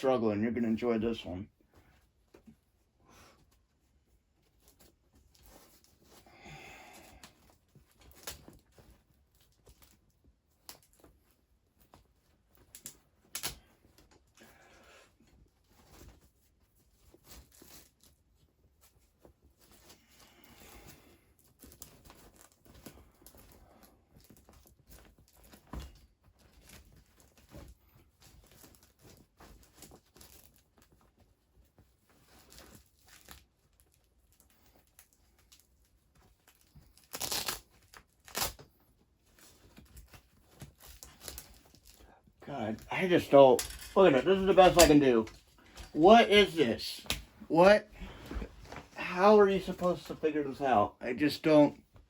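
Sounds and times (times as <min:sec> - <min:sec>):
fabric rustling and scraping: 0:01.5 - 0:06.2, 0:07.3 - 0:52.0
tearing sounds: 0:36.5 - 0:38.7.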